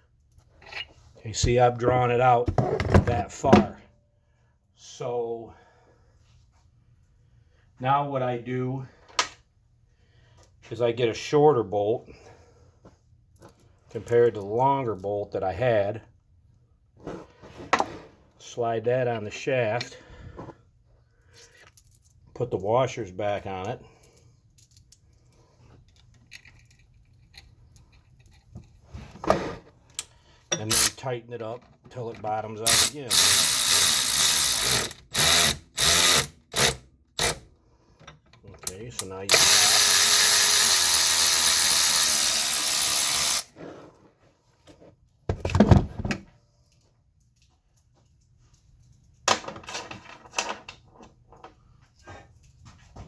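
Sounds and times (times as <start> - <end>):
clatter of tools and parts: 0.3 - 1.2, 23.6 - 44.0, 44.6 - 53.0
power tool turning bolt: 30.0 - 31.0, 32.6 - 37.5, 38.6 - 43.5
tool handling burst: 30.0 - 31.0, 32.7 - 37.5, 38.6 - 43.5.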